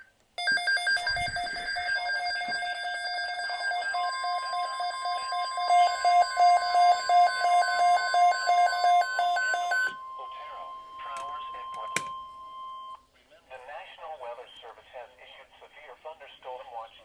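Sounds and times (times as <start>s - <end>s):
electronic alert beeping: 0.4s - 13.0s.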